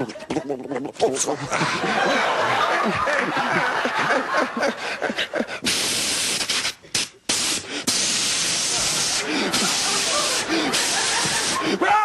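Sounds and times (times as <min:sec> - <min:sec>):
audience laughing: 0:01.3 - 0:05.6, 0:08.6 - 0:11.8
mouth hissing spray sound: 0:05.5 - 0:11.8.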